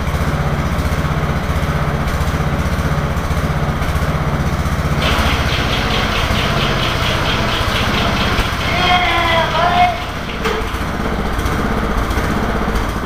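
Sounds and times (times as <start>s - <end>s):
lawn mower engine running: 0.0s - 13.0s
high-pitched repeating rattle: 5.0s - 11.6s.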